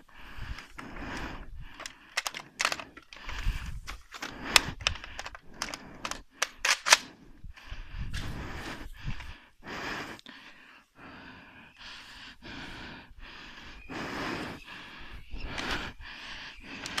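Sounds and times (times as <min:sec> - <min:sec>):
rustling and movement: 0:00.0 - 0:09.4
sharp clicks and snaps: 0:00.4 - 0:07.7, 0:16.6 - 0:17.0.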